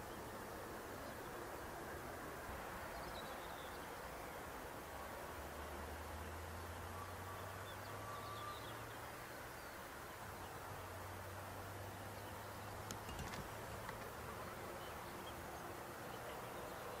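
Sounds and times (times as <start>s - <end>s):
bird chirps: 7.0s - 9.0s.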